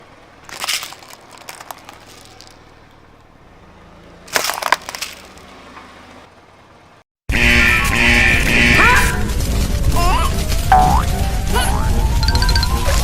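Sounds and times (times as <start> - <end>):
objects crunching under a car tyre: 0.4 - 2.9, 4.3 - 5.6.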